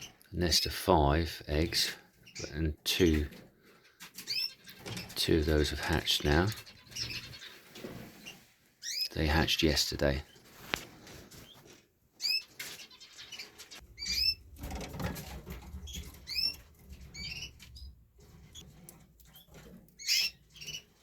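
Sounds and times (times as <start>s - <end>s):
canaries chirping: 0.0s - 21.0s
soft rustle: 10.3s - 13.9s.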